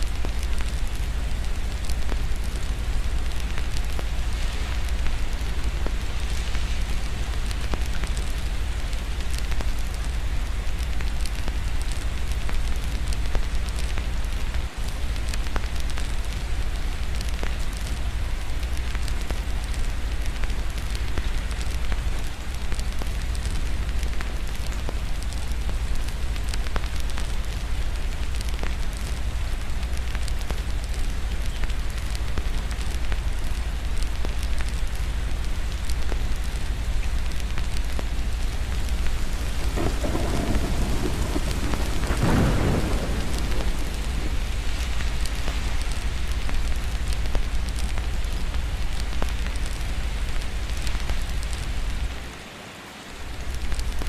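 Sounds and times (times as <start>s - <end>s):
steady rain: 0.0s - 54.0s
fireplace crackling: 33.8s - 52.3s
distant thunder rolling: 38.7s - 46.0s.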